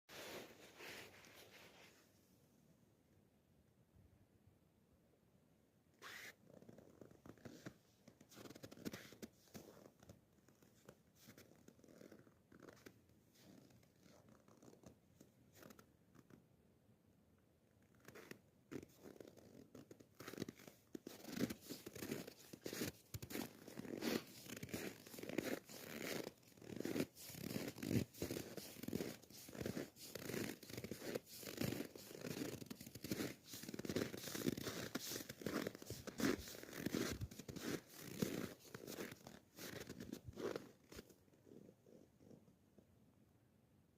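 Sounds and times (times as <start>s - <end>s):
footsteps crunching on frozen snow: 21.2s - 40.6s.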